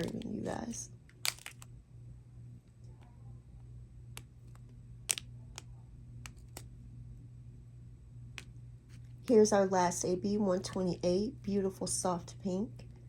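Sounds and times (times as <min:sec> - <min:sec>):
plastic bags clicking: 0:00.0 - 0:01.7
low steady hum: 0:00.0 - 0:13.0.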